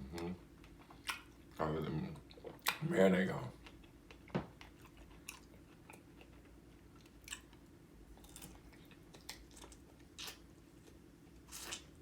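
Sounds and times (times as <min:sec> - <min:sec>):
low steady hum: 0:00.0 - 0:12.0
faint chewing: 0:03.5 - 0:12.0.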